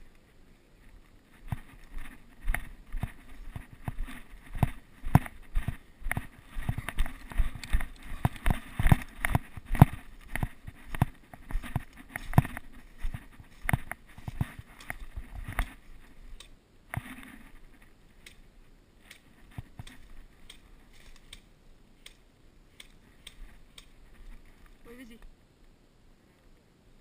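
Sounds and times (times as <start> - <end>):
footsteps walking: 0.0 - 18.0, 19.0 - 21.4
knocks and rustles of gear: 0.8 - 16.2, 19.0 - 21.4.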